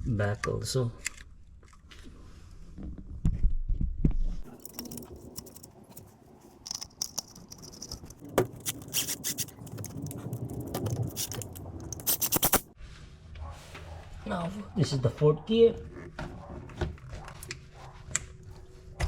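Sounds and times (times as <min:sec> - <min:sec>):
tools clicking and scraping: 0:04.4 - 0:12.8.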